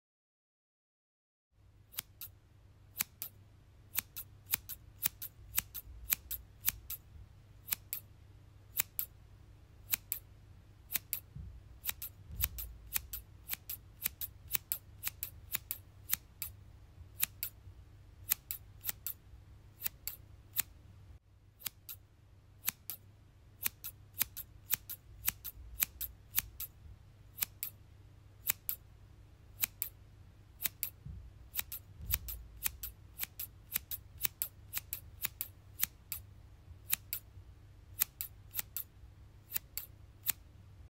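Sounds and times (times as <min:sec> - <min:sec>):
scissors snipping: 0:01.9 - 0:02.3, 0:03.0 - 0:07.0, 0:07.7 - 0:08.1, 0:08.7 - 0:09.1, 0:09.9 - 0:10.2, 0:10.9 - 0:16.6, 0:17.2 - 0:17.6, 0:18.2 - 0:19.2, 0:19.8 - 0:20.7, 0:21.6 - 0:22.0, 0:22.6 - 0:23.0, 0:23.6 - 0:26.8, 0:27.4 - 0:27.8, 0:28.4 - 0:28.8, 0:29.6 - 0:30.0, 0:30.6 - 0:36.2, 0:36.9 - 0:37.2, 0:38.0 - 0:38.9, 0:39.5 - 0:40.4.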